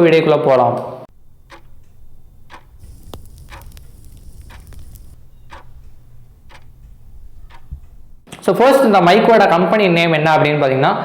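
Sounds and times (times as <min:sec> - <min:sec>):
clock ticking: 0:01.1 - 0:08.3
low room rumble: 0:01.1 - 0:08.3
sharp click: 0:01.4 - 0:08.4.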